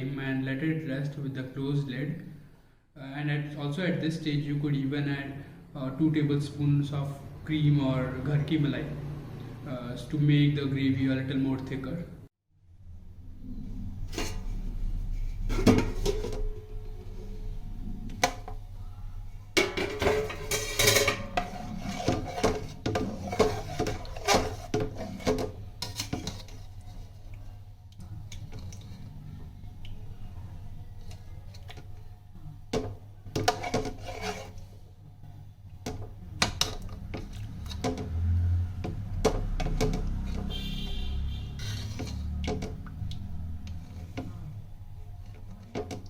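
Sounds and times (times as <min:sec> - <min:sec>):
utensils clinking against dishes: 0:19.6 - 0:26.5.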